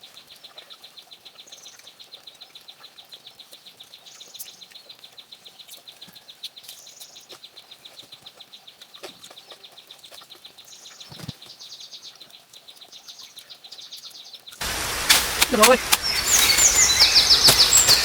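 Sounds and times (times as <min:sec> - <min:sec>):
rapid high-pitched chirping: 0:12.8 - 0:18.0
higher buzzing trills: 0:14.6 - 0:18.0.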